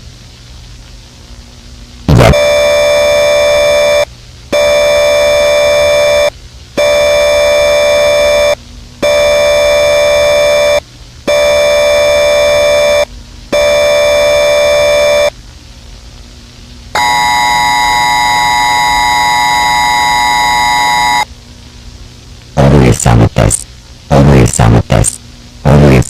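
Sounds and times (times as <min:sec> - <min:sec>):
electronic alert tone blasts: 0:17.0 - 0:21.3.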